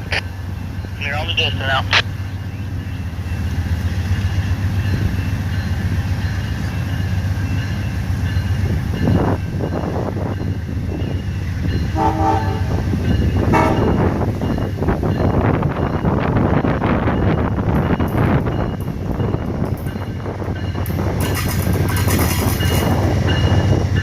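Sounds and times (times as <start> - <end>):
train rumbling: 0.0 - 24.0
train horn blast: 11.9 - 12.8, 13.5 - 14.1.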